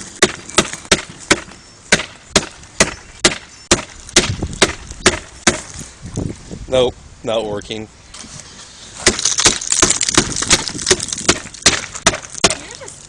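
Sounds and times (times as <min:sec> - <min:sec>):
knocking on ice crust: 0:09.0 - 0:12.7.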